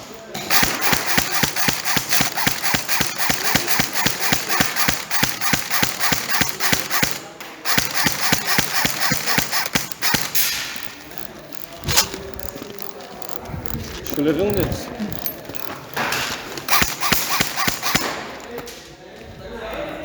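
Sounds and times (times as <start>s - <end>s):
airsoft gun shot crack: 0.5s - 11.0s, 16.7s - 18.6s.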